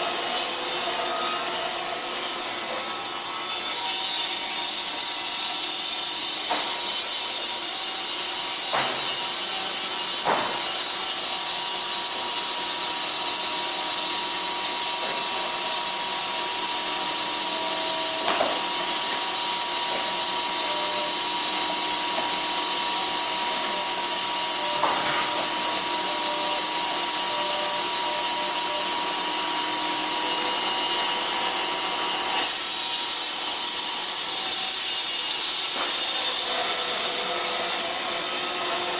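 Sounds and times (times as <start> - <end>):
band saw cutting log: 0.0 - 38.9.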